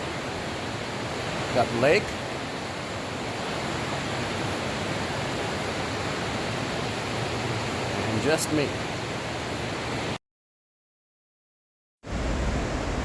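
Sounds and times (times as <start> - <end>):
waterfall rushing in a cave: 0.0 - 10.2.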